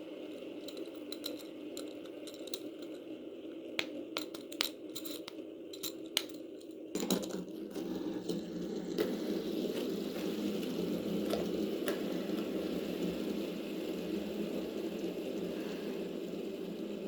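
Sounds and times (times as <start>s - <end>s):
plastic toys clicking and rattling: 0.3s - 3.1s, 3.8s - 7.5s.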